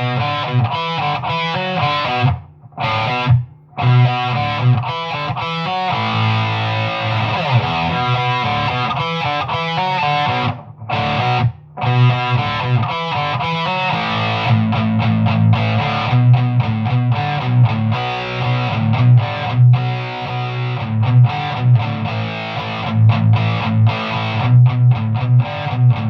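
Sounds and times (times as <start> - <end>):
distorted electric guitar riffs: 0.0 - 26.0.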